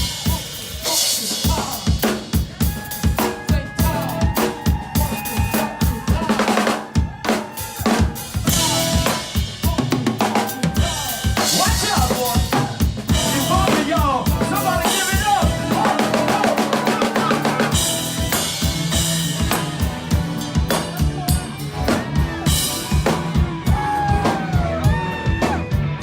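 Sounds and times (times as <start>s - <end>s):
live rock band playing: 0.0s - 26.0s
lead guitar line with bending notes: 13.1s - 26.0s.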